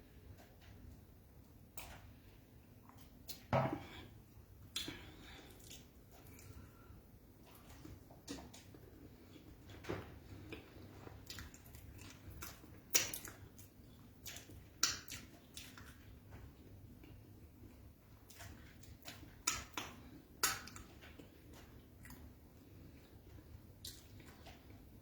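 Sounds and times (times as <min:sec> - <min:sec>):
chewing and mouth sounds: 0:04.6 - 0:24.9.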